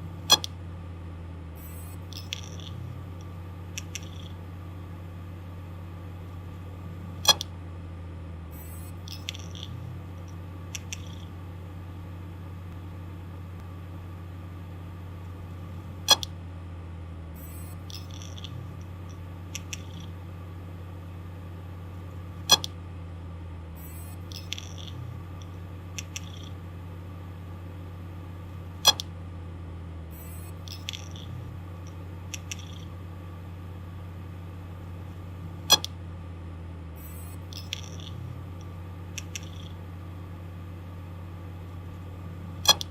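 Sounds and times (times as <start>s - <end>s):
hard disk drive humming: 0.0s - 42.9s
faint ticks: 2.1s - 4.4s, 30.6s - 32.9s, 37.4s - 39.8s
hard drive head clicking: 7.2s - 7.5s, 22.5s - 22.8s, 42.6s - 42.9s.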